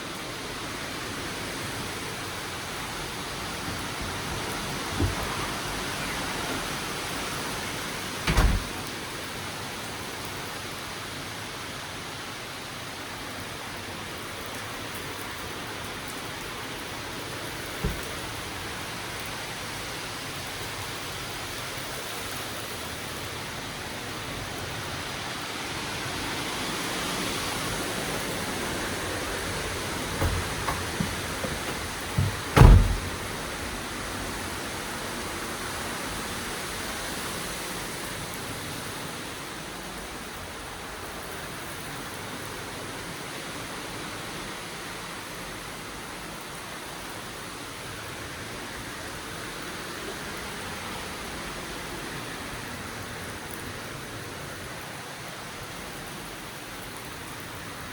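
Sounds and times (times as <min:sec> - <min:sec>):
rain and wind hissing: 0:00.0 - 0:57.9
low thumps: 0:30.1 - 0:33.3.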